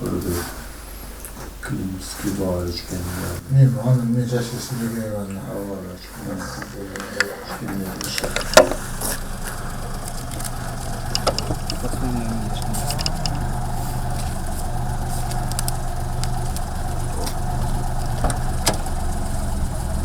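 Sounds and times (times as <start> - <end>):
car engine running at low revs: 0.0 - 20.0
light clicks: 6.2 - 20.0.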